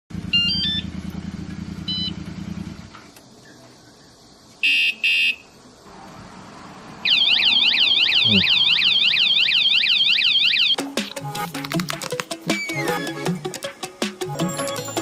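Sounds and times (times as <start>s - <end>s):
motorcycle engine idling: 0.1s - 4.2s
alarm beeps: 7.0s - 10.8s
electronic chirps: 7.1s - 9.7s.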